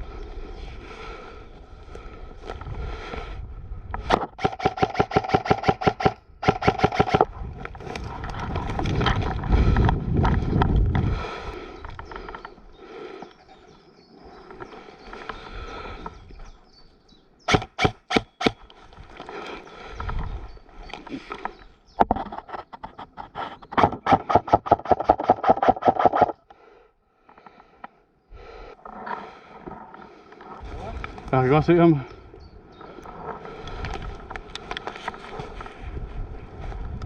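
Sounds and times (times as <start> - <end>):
airsoft rifle shots: 4.2 - 7.3, 17.5 - 18.6.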